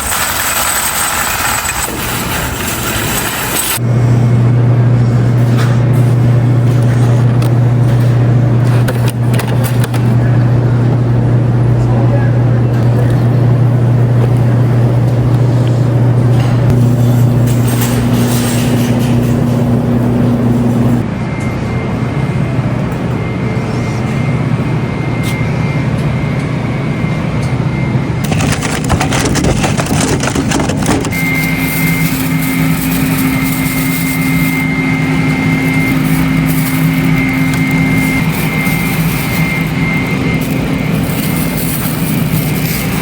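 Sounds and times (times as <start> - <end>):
crackling: 28.3 - 43.0.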